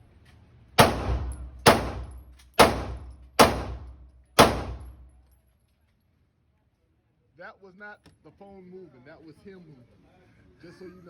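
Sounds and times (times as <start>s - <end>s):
gunshots with short echo: 0.8s - 5.1s.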